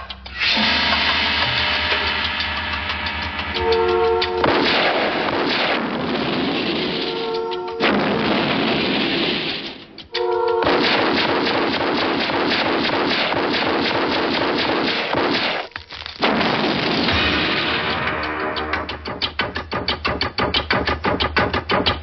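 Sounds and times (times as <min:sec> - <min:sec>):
film music: 0:00.0 - 0:13.3, 0:17.1 - 0:22.0
rapid gunfire: 0:03.4 - 0:09.9, 0:10.6 - 0:18.4.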